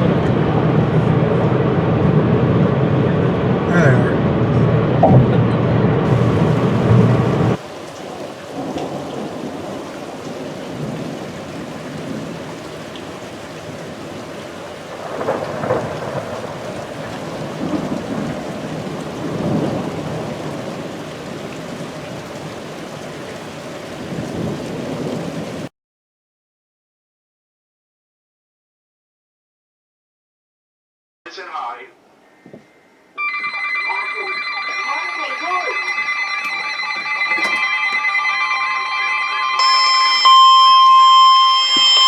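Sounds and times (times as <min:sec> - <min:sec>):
thunder rolling: 0:00.0 - 0:25.7
steady rain: 0:06.0 - 0:25.7.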